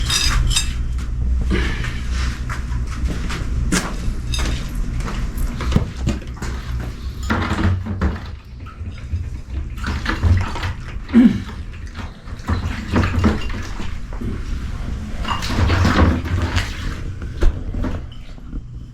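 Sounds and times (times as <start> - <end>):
low rumble: 0.0 - 7.3
bowls clinking: 4.3 - 14.1.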